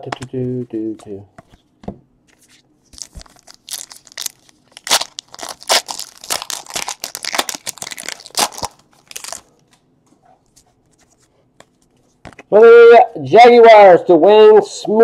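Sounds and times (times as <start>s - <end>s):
wrapper tearing and crinkling: 2.9s - 9.6s.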